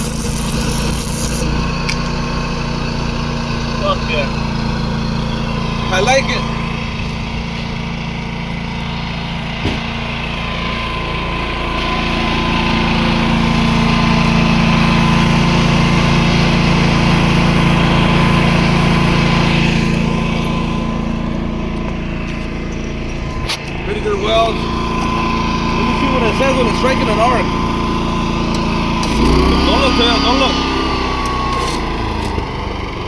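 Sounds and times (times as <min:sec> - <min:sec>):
hiss: 0:00.0 - 0:01.5
generator running: 0:00.0 - 0:33.0.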